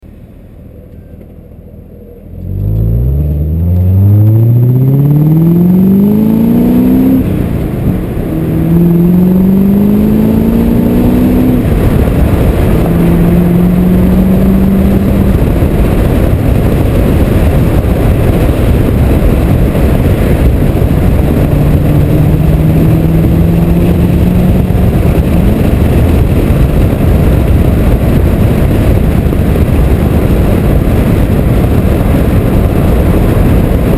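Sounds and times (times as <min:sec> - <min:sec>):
constant noise: 0:00.0 - 0:33.9
loud engine revving: 0:02.4 - 0:28.2.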